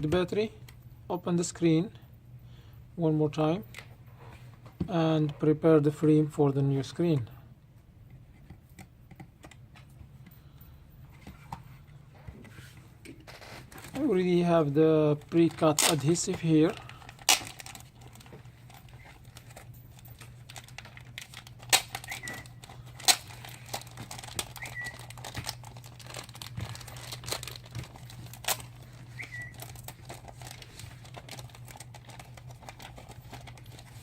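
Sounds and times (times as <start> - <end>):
steady low hum: 0.0 - 34.0
plastic film crinkling: 13.7 - 34.0.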